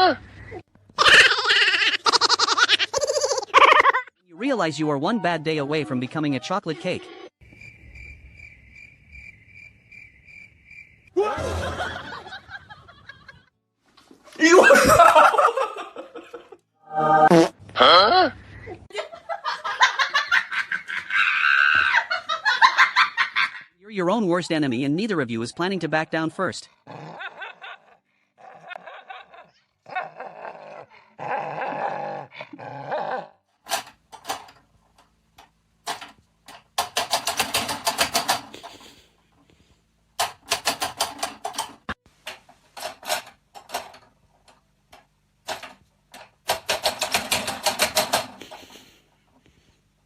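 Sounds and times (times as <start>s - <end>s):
insect chirping trill: 7.4s - 11.1s
dog growling and barking: 26.7s - 33.4s.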